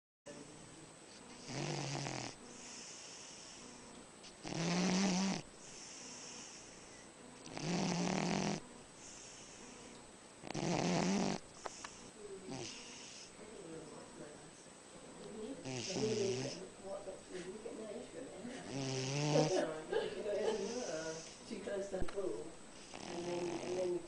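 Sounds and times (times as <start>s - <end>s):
man snoring: 1.5s - 3.6s, 4.4s - 6.7s, 7.5s - 9.6s, 10.4s - 11.4s, 12.5s - 13.3s, 15.6s - 16.6s, 18.6s - 19.6s, 22.9s - 23.9s
soft breathing: 2.4s - 4.4s, 5.6s - 7.3s, 9.0s - 10.1s, 11.5s - 14.0s, 17.2s - 18.8s, 19.4s - 21.5s.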